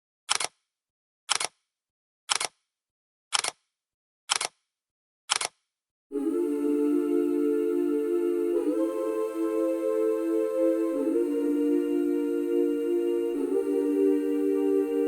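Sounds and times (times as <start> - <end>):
music: 6.2 - 15.0.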